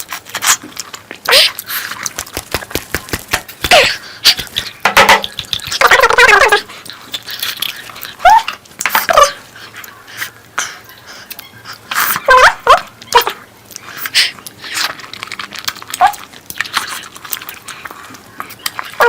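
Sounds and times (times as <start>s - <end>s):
wet chewing and lip-smacking: 0.0s - 12.3s, 12.9s - 19.0s.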